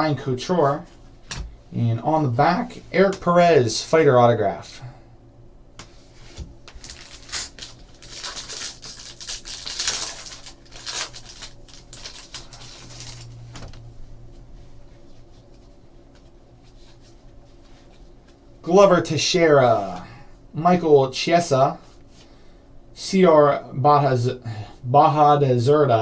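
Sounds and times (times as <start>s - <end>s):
card pack rustling and crinkling: 6.6s - 13.4s.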